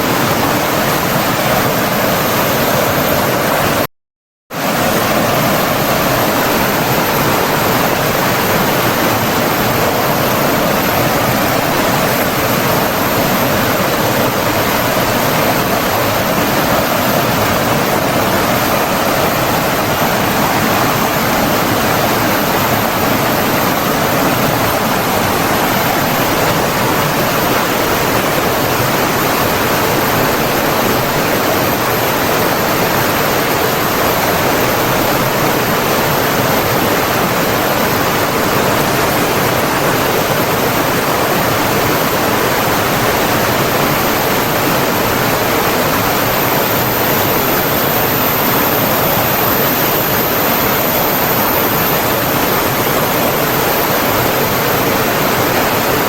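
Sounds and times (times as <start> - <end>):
flowing water rushing: 4.6 - 56.0.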